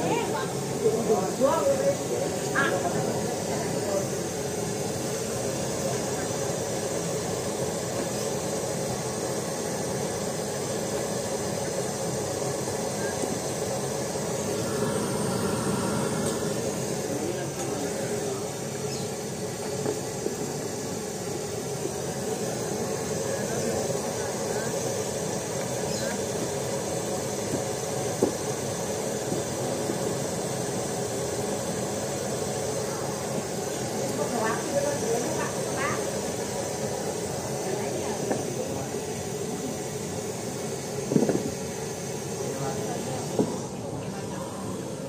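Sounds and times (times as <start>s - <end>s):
crowd babble: 0.0s - 8.8s, 12.8s - 28.2s, 32.4s - 45.0s
busy market din: 0.0s - 45.0s.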